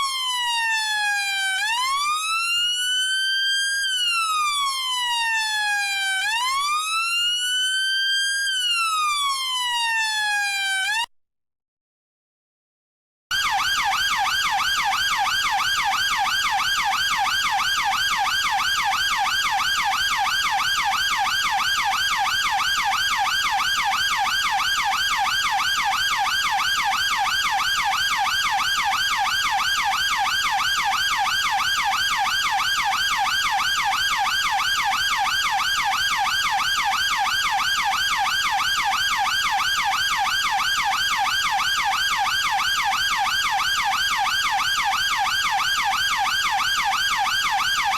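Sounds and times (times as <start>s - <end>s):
police siren yelping: 0.0s - 11.0s, 13.3s - 47.9s.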